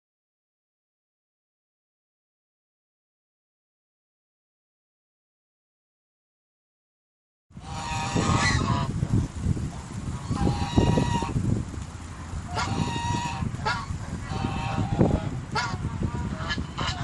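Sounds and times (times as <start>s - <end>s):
geese honking: 7.6s - 9.0s, 10.2s - 11.4s, 12.5s - 17.0s.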